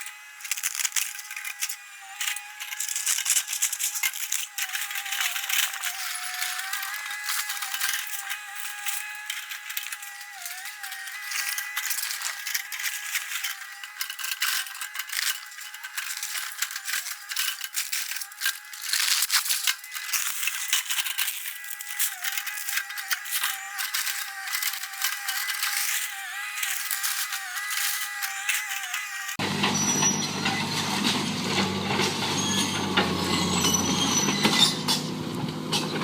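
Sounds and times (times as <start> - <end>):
debris breaking and rattling: 0.4 - 29.4
excavator engine whine: 29.3 - 36.0.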